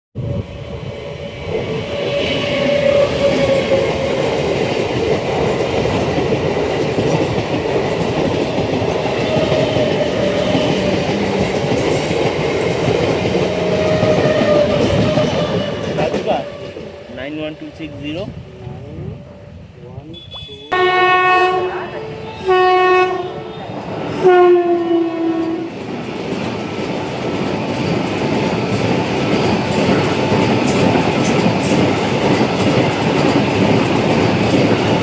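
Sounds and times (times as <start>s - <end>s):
train wheels rumbling on rails: 0.2s - 19.3s, 21.8s - 35.0s.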